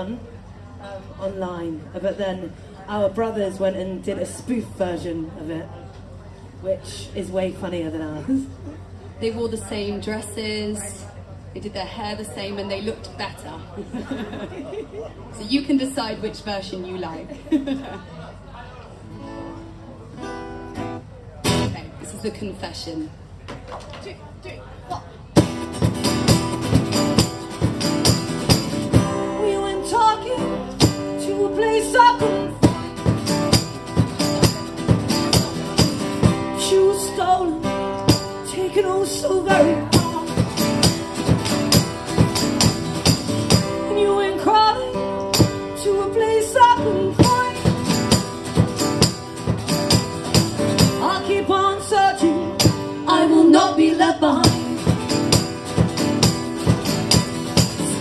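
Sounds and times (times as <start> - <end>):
guitar: 18.9 - 24.0, 24.9 - 58.0
tambourine and percussion beat: 25.5 - 29.0, 33.1 - 36.2, 40.0 - 43.7, 47.2 - 51.0, 54.4 - 58.0.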